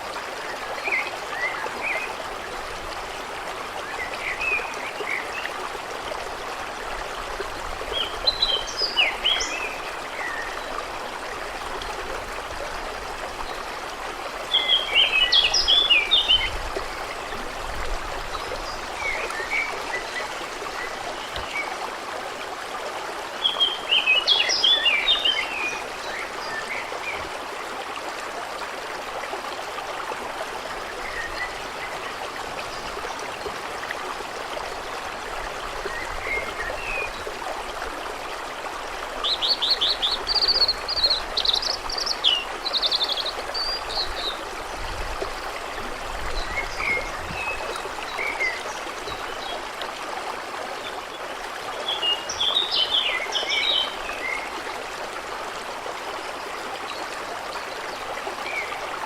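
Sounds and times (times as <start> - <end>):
stream running: 0.0 - 59.0
songbirds singing: 39.2 - 49.7.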